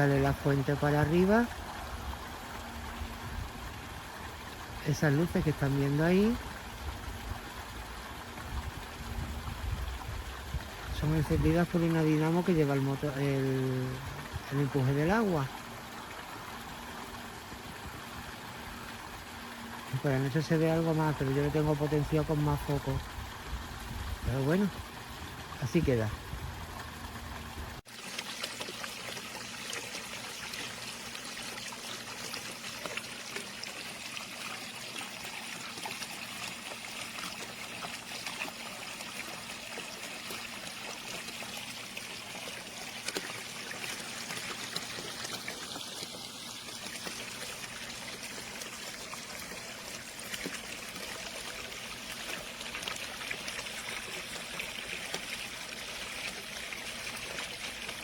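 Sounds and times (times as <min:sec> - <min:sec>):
water splashing into pool: 0:20.8 - 0:58.0.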